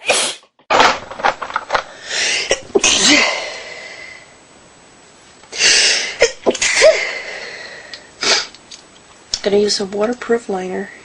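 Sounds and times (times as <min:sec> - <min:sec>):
woman sneezing: 0:02.4 - 0:03.4.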